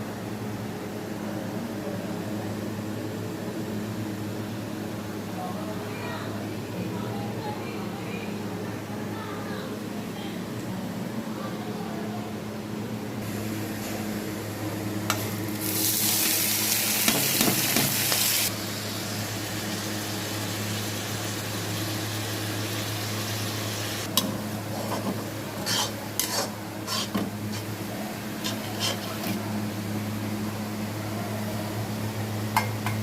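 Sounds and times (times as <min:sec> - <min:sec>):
steady low hum: 0:00.0 - 0:33.0
food sizzling in hot oil: 0:15.1 - 0:29.2
spatula scraping a pan: 0:24.7 - 0:27.7, 0:28.4 - 0:29.4.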